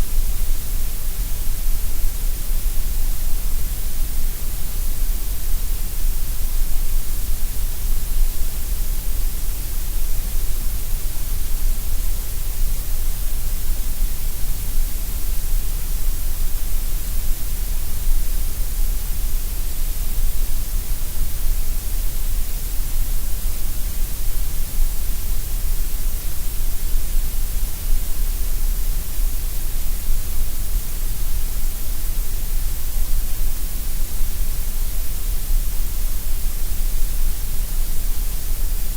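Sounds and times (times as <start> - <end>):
steady gray noise hiss: 0.0 - 38.9.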